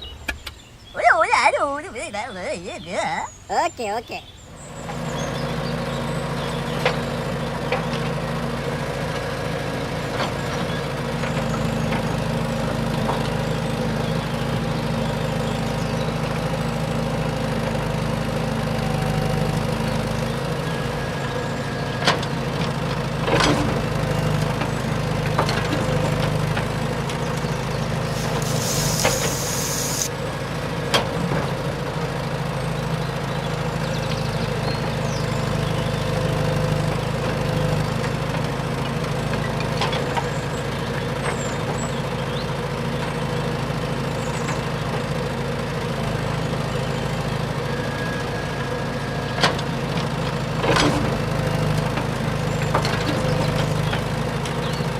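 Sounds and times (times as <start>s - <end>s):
small motor humming: 27.3s - 30.2s
brief hiss: 28.2s - 30.1s.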